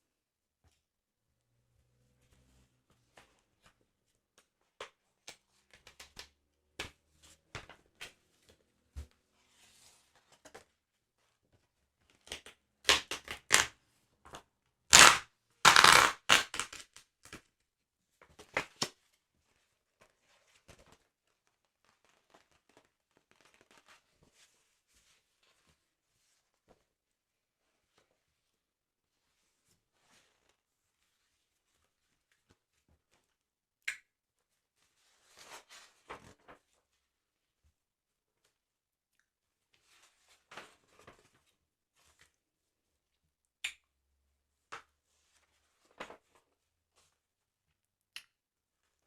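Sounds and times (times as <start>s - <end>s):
paper crinkling and tearing: 14.9s - 17.0s.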